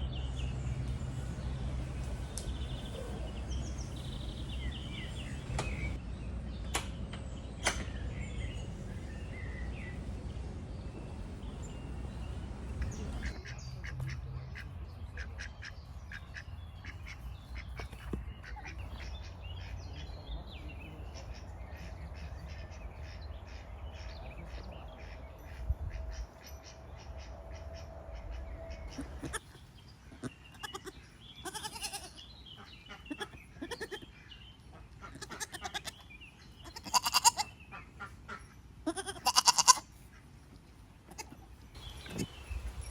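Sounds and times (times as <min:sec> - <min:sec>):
songbirds chirping: 0:00.0 - 0:42.9
ducks quacking: 0:12.8 - 0:20.2, 0:21.2 - 0:29.4, 0:31.5 - 0:34.0, 0:34.7 - 0:35.9.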